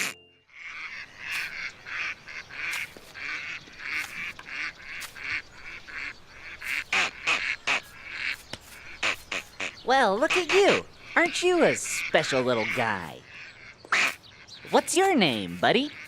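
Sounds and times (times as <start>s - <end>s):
cartoon bird quacking: 0.0s - 16.0s.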